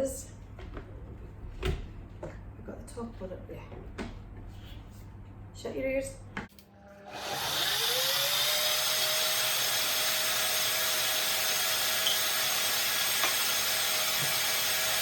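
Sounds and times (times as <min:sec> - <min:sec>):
blender motor whining: 0:06.8 - 0:15.0.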